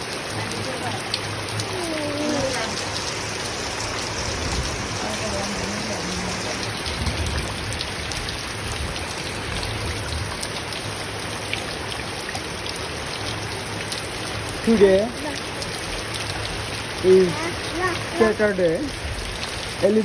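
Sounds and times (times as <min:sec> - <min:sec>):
raindrops ticking on surfaces: 0:00.0 - 0:20.0
steady rain falling: 0:00.0 - 0:20.0.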